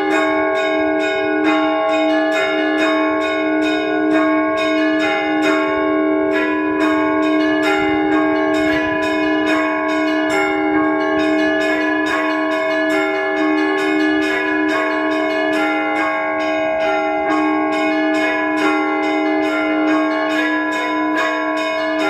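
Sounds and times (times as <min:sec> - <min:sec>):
church bells pealing: 0:00.0 - 0:22.0.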